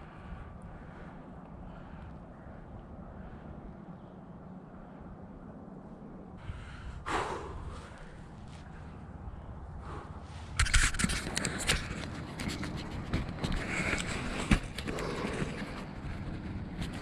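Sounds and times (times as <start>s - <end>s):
close scraping and rustling: 10.3s - 17.0s.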